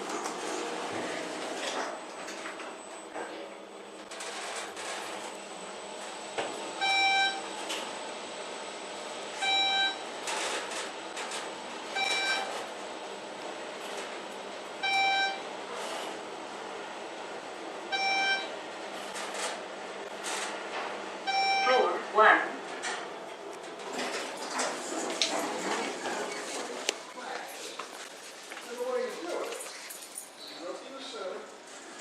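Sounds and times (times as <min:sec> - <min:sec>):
elevator electronic beep: 0:06.8 - 0:07.5, 0:09.4 - 0:10.1, 0:11.9 - 0:12.6, 0:14.8 - 0:15.5, 0:17.9 - 0:18.6, 0:21.2 - 0:21.8.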